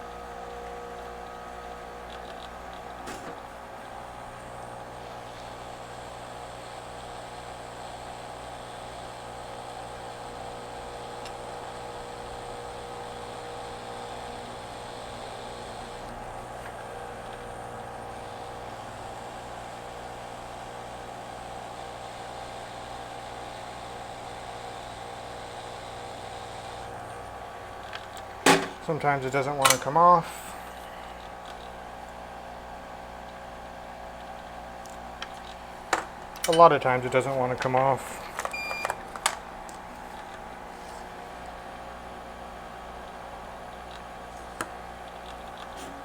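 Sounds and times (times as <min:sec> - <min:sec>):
fan hum: 0:26.2 - 0:46.0
hot air blower hiss: 0:27.4 - 0:31.2.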